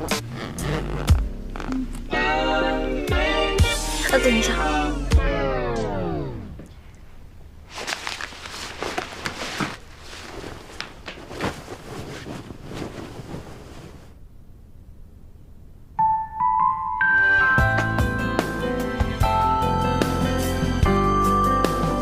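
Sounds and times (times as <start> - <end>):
rustling and scuffing: 7.7 - 14.2
piano music: 16.0 - 22.0.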